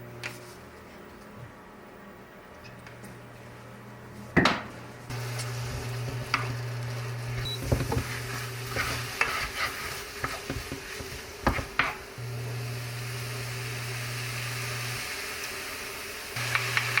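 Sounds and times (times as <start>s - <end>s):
food sizzling in frying pan: 5.1s - 17.0s.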